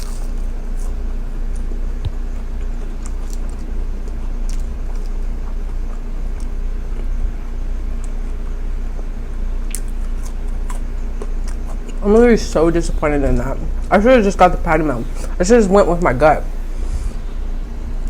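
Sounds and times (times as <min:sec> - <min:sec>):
person chewing: 0:00.0 - 0:12.0
low background hum: 0:00.0 - 0:18.0.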